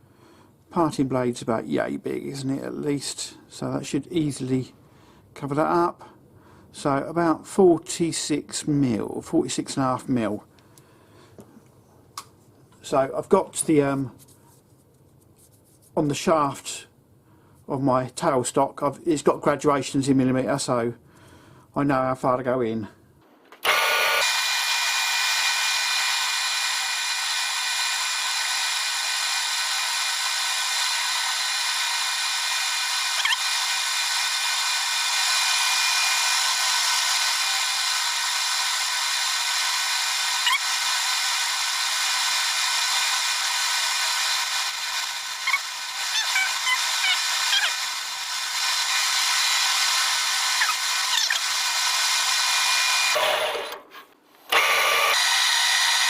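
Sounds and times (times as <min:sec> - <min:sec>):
metal lathe drilling whine: 0:23.6 - 0:53.8, 0:54.5 - 0:56.0
squeaks from the cut: 0:33.2 - 0:33.5, 0:40.4 - 0:40.7, 0:45.5 - 0:47.8, 0:50.6 - 0:51.4.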